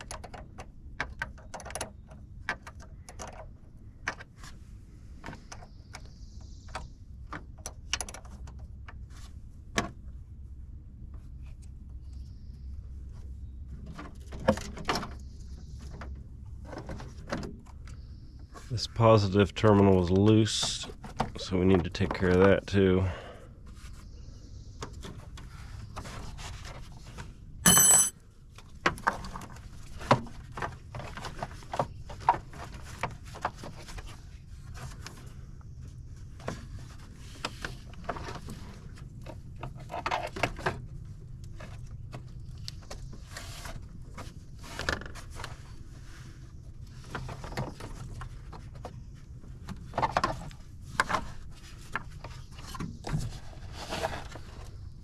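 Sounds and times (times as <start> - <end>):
loud ringing metal clank: 27.7 - 28.1
metal hand tools clicking and scraping: 27.7 - 28.1.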